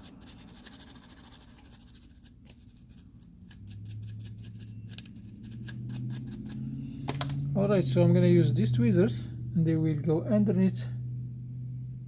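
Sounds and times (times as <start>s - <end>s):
small brush scrubbing: 0.0s - 6.6s.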